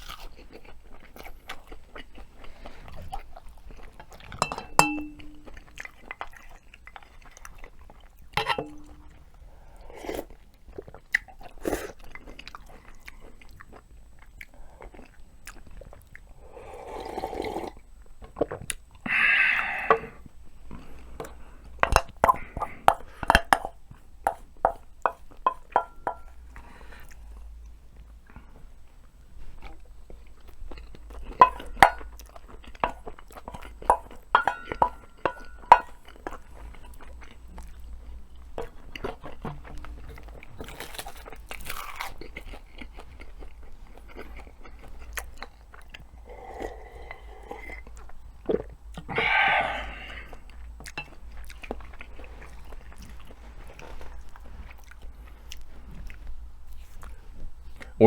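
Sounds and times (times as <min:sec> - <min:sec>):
crunchy food chewing: 0:00.0 - 0:58.0
wet chewing: 0:00.0 - 0:58.0.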